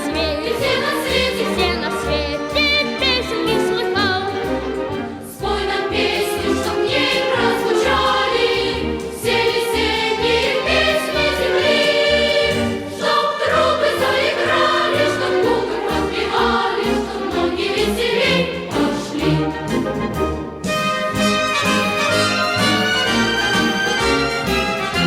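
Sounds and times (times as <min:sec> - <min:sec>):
choir singing: 0:00.0 - 0:20.7, 0:21.6 - 0:25.0
instrumental accompaniment: 0:00.0 - 0:25.0.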